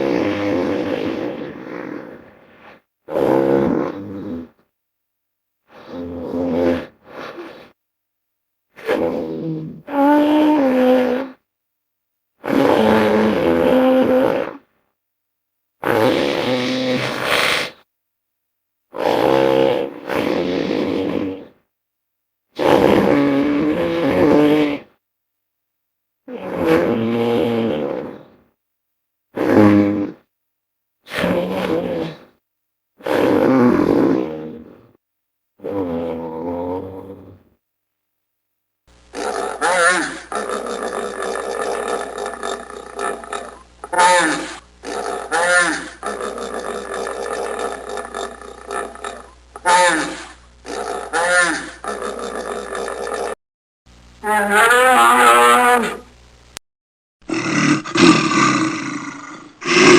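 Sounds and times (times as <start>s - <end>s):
deep creature roars: 39.2s - 53.4s, 57.2s - 59.9s.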